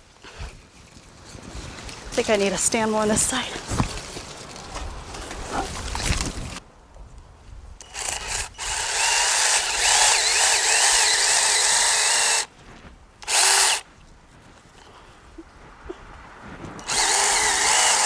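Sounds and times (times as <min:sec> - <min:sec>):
mini chainsaw cutting branches: 0:07.8 - 0:12.5, 0:13.2 - 0:13.8, 0:16.8 - 0:18.0.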